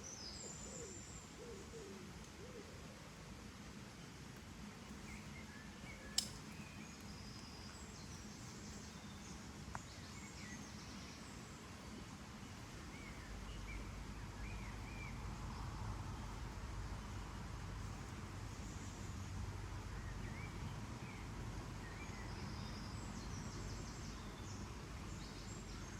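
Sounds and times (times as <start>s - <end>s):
sharp click: 6.1s - 6.4s.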